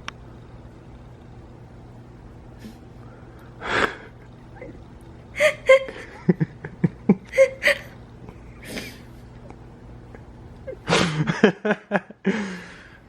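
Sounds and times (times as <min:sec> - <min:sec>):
person sharp breath: 0:02.6 - 0:04.1, 0:12.3 - 0:13.0.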